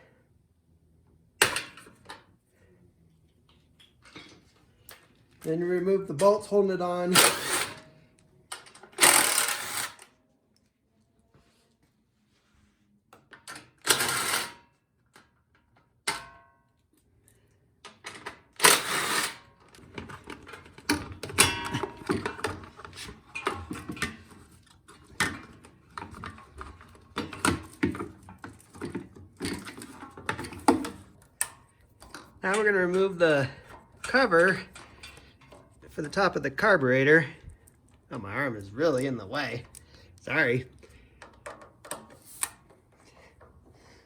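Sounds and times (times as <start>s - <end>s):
tools and plastic parts clattering: 3.5s - 6.5s, 7.1s - 7.9s, 8.5s - 10.1s, 13.2s - 16.3s, 17.3s - 36.3s, 37.4s - 43.8s
power tool removing bolts: 7.1s - 7.9s, 8.9s - 10.1s, 13.8s - 14.6s, 18.2s - 19.5s.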